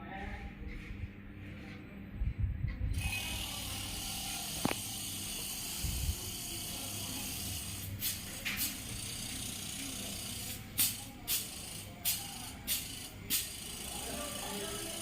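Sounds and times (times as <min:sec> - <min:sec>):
short hiss bursts: 0:07.5 - 0:08.8, 0:10.8 - 0:13.6.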